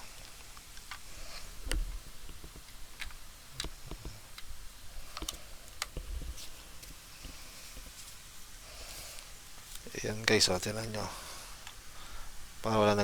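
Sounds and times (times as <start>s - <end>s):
hard plastic clicks and taps: 1.6s - 4.5s, 5.1s - 6.1s.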